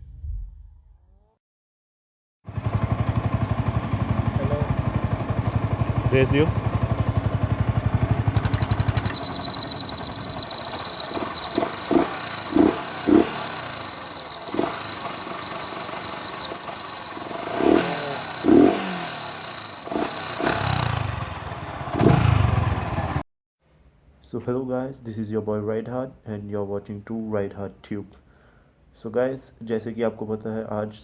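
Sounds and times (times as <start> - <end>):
motorcycle throttle blips: 2.5 - 23.2
turbo whistle on motorcycle exhaust: 5.8 - 22.9.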